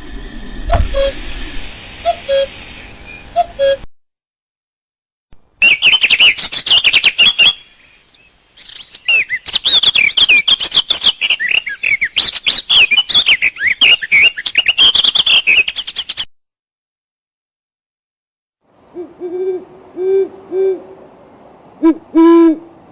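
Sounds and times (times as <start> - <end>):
bird singing chirps and whistles: 5.6 - 16.3.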